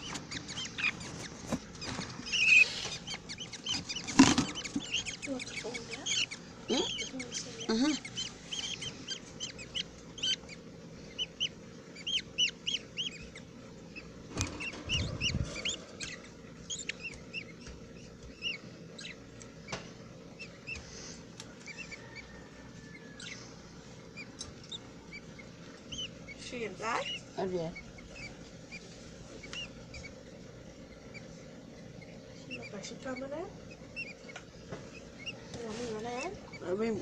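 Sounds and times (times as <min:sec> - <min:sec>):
budgerigars chirping: 0:00.0 - 0:37.0
low rumbling bump: 0:14.3 - 0:16.1.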